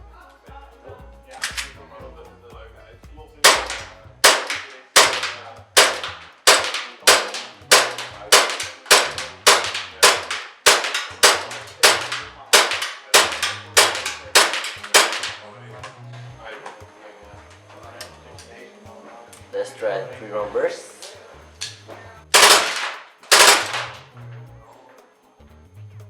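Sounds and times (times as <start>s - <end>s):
airsoft pistol shots: 3.5s - 15.5s, 22.4s - 24.0s.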